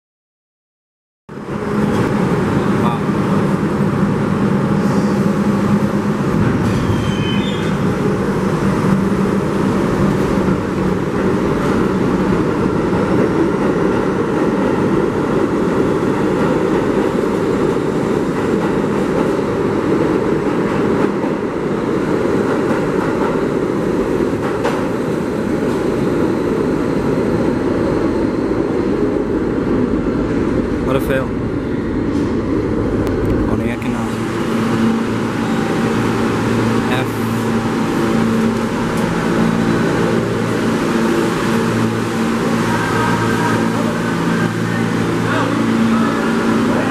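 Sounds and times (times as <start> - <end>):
subway train wheels rumbling: 1.3 - 46.9
high wheel squeal: 6.6 - 7.9.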